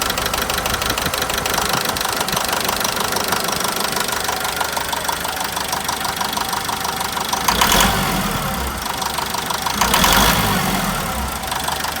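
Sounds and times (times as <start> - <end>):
diesel engine knocking: 0.0 - 12.0
engine revving: 5.2 - 12.0.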